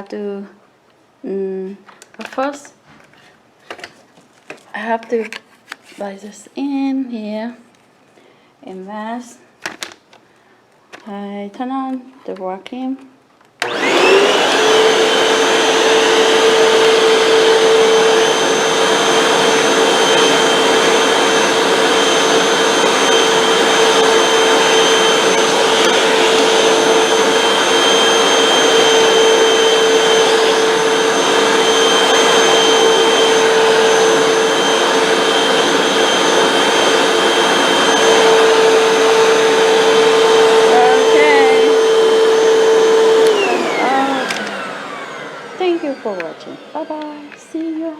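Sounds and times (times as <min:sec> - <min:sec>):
vacuum cleaner running: 0:13.6 - 0:47.9.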